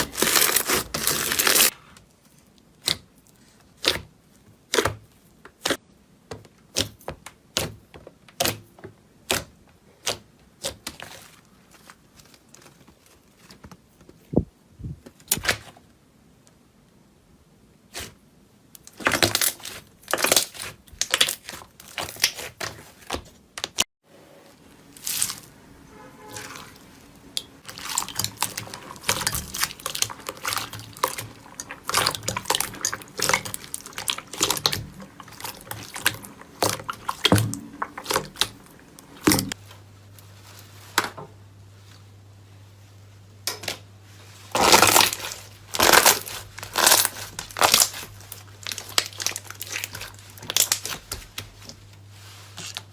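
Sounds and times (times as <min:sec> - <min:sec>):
slime squelching by hand: 0:00.0 - 0:05.8, 0:18.8 - 0:23.8, 0:24.5 - 0:39.7, 0:44.3 - 0:52.9.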